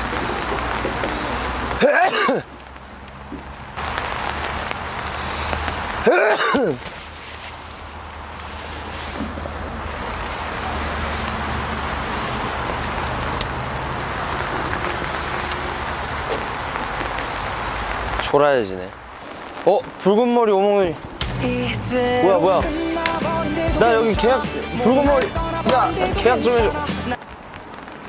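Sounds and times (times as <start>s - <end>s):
man's loud vocal outburst: 1.8s - 2.5s, 6.0s - 6.9s
steady hiss: 20.8s - 28.0s.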